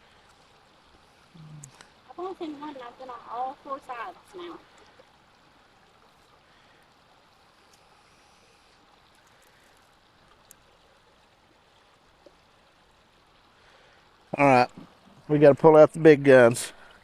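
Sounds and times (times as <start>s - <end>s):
faint steady hiss: 0.0s - 17.0s
small tick: 7.6s - 7.9s, 9.1s - 10.6s.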